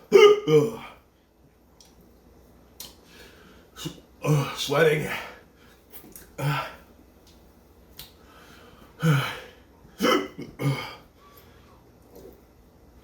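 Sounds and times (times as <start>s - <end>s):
man hiccuping: 0.0s - 1.0s, 10.0s - 11.0s.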